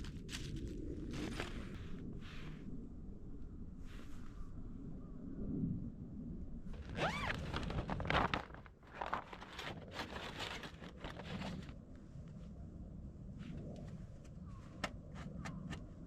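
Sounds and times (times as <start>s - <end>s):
gear rustling and clattering: 6.8s - 11.7s.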